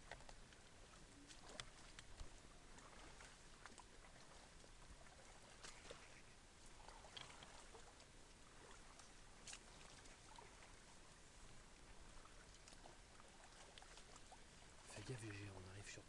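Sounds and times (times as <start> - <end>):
soft clicks and rustles: 0.0 - 3.9, 5.5 - 8.1
faint background hiss: 0.0 - 16.0.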